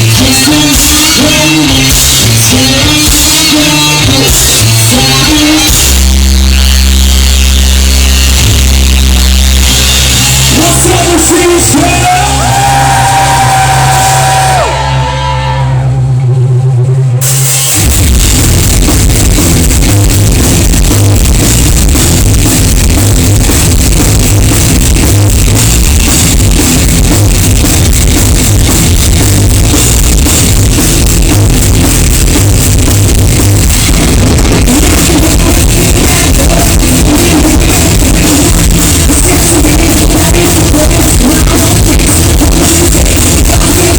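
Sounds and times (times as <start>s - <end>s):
drums: 0.0s - 43.9s
rock band playing live: 0.0s - 43.9s
person singing: 34.6s - 43.9s.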